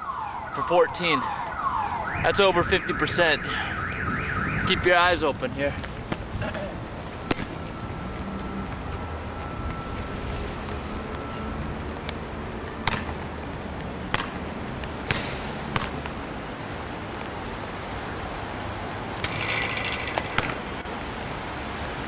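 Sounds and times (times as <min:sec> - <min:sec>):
basketball bouncing on pavement: 0:12.8 - 0:13.3, 0:19.2 - 0:20.7
short rattling burst: 0:19.2 - 0:20.8.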